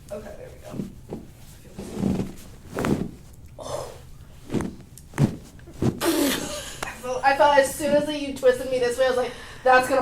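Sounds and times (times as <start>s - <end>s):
spine cracking: 0.7s - 6.2s
bumps on treatment table: 4.5s - 6.1s.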